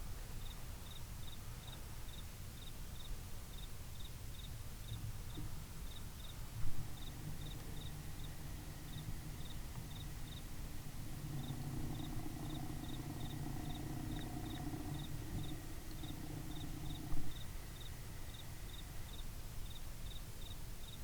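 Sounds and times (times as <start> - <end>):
faint low hum: 4.3 - 21.0
low outdoor rumble: 6.4 - 19.6
insect chirping: 6.9 - 19.8.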